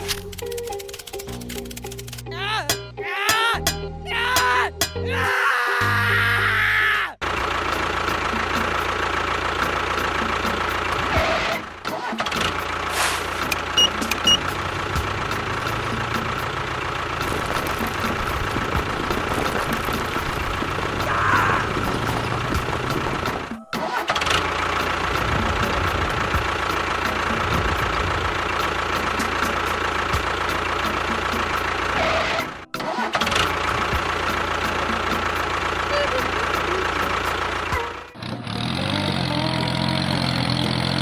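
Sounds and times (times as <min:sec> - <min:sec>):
toy motor whining: 0:00.0 - 0:02.3, 0:12.8 - 0:26.3, 0:31.9 - 0:41.0.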